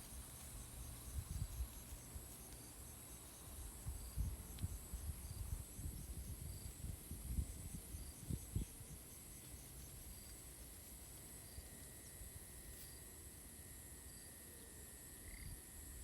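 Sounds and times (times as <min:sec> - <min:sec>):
crickets chirping: 0:00.0 - 0:16.0
wind on microphone: 0:01.0 - 0:01.8, 0:03.7 - 0:09.2.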